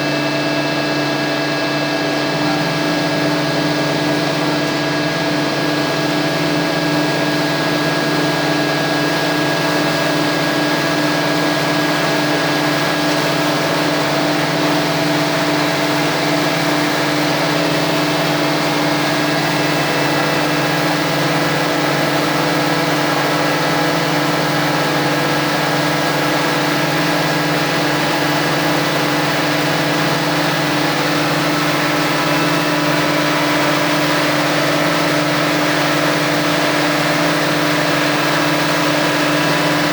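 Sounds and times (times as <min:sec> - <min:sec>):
lathe machine drone: 0:00.0 - 0:39.9.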